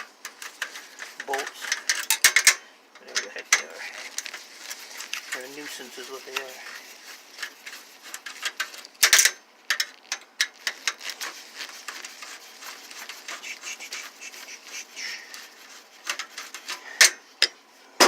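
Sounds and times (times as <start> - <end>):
metal tools clicking and clinking: 0.2 - 3.8.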